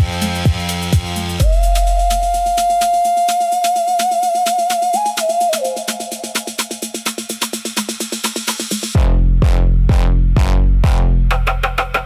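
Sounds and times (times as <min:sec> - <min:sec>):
kick drum beat: 0:00.0 - 0:03.0, 0:07.5 - 0:12.0
hi-hat ticks: 0:00.0 - 0:09.0
deep sub-bass note: 0:09.0 - 0:11.7.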